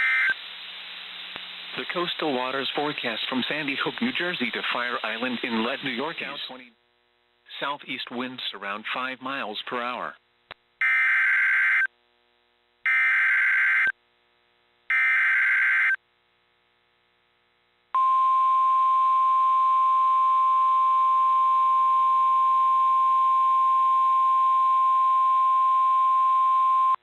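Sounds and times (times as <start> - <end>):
steady warning alarm tone: 14.9 - 16.0.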